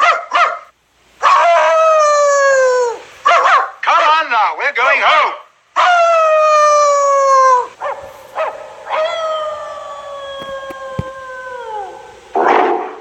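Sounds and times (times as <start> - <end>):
dog barking gruffly: 0.0 - 1.4, 3.2 - 3.8, 7.8 - 9.0
dog yipping: 0.0 - 1.6, 3.2 - 3.8, 7.8 - 11.9
dog howling: 1.2 - 3.5, 5.8 - 12.4.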